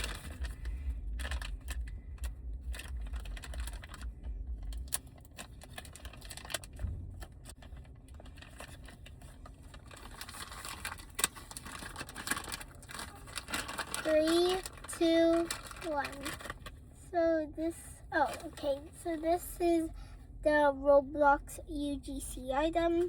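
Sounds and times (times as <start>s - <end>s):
plastic bag crinkling and tapping: 0.0s - 16.8s
handling rumble: 0.0s - 20.3s.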